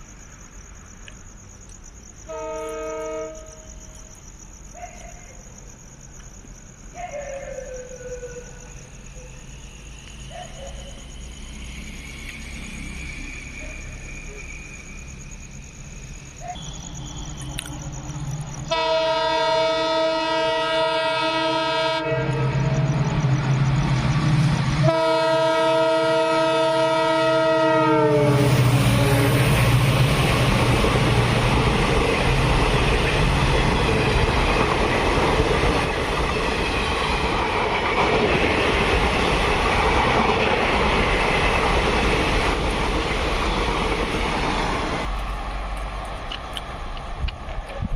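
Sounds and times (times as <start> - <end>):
train running past on track: 0.0 - 4.6, 7.7 - 47.9
locomotive horn blasts: 2.3 - 3.7, 18.7 - 22.6, 24.8 - 29.5.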